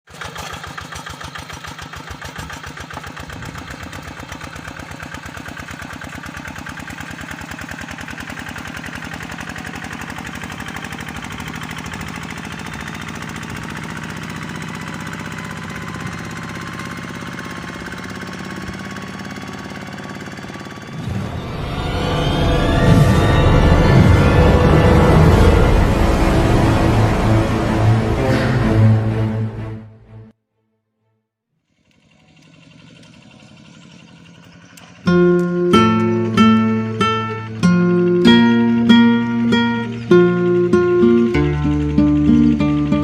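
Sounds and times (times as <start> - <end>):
tractor diesel engine under load: 0.1 - 29.8, 31.8 - 43.0.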